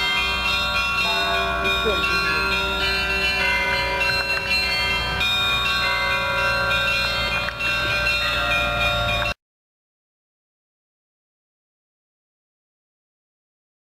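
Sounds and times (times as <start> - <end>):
church bells ringing: 0.0 - 9.4.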